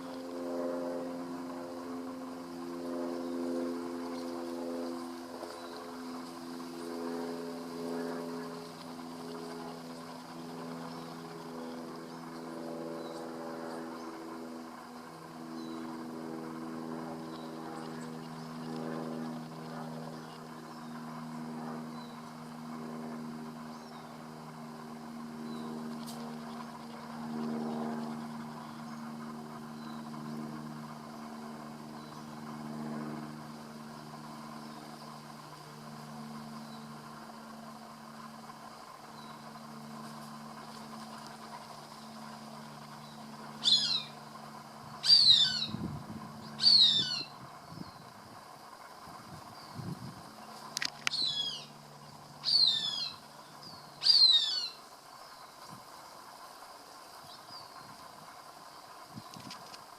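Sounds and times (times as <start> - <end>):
steady mechanical hum: 0.0 - 59.9
hawk calling: 43.6 - 44.2, 45.0 - 45.8, 46.5 - 47.3, 51.1 - 51.7, 52.4 - 53.2, 54.0 - 54.8.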